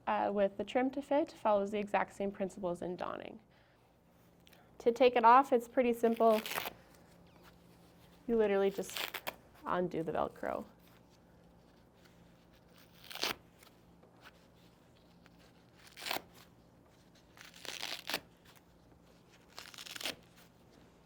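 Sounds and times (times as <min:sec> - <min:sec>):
velcro straps ripping open: 0:06.1 - 0:07.6, 0:08.7 - 0:09.4, 0:11.6 - 0:20.6.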